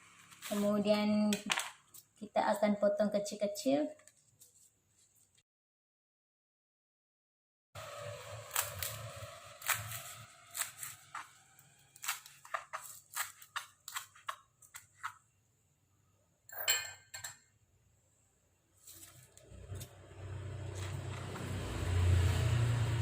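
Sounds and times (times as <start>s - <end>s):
leaves being cut: 0.1s - 1.1s, 7.8s - 15.2s, 18.8s - 23.0s.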